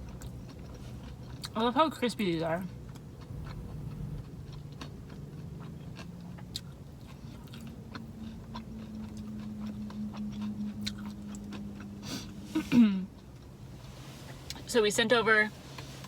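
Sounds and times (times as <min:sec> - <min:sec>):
crunchy chewing: 0:02.7 - 0:12.4
steady low hum: 0:02.8 - 0:13.7.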